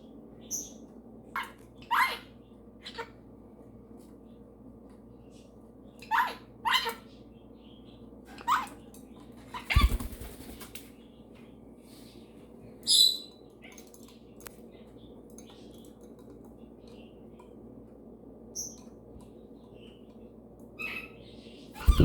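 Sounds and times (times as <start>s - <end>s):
parrot flapping wings: 9.5s - 10.9s, 21.8s - 22.0s
parrot chirping: 12.8s - 13.3s, 21.8s - 22.0s.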